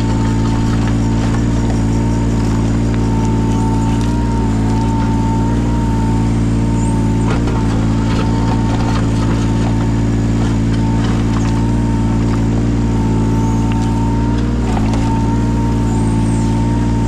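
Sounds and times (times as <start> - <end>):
engine whine: 0.0 - 17.0
excavator diesel engine running: 0.0 - 17.0.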